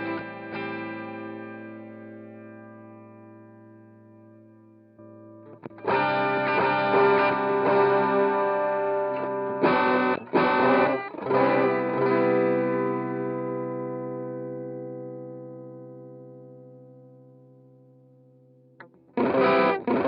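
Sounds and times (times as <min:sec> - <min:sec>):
distorted electric guitar chords: 0:00.0 - 0:03.6, 0:05.0 - 0:17.2, 0:18.8 - 0:20.0.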